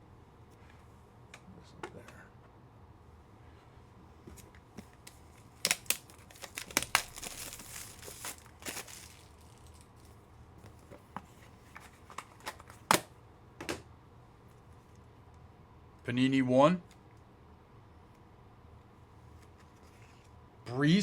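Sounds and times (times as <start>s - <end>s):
foil wrapper tearing and crinkling: 5.0s - 10.1s.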